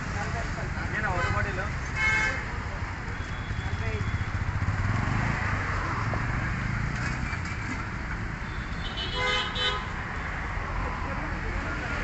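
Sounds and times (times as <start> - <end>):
road traffic: 0.0 - 12.0
vehicle horn: 2.0 - 2.4, 8.5 - 9.9.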